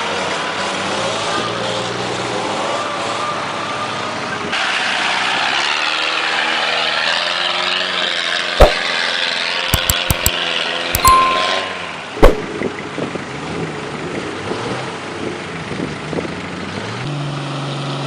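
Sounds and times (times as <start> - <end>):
sharp knocks and clunks: 9.7 - 10.3.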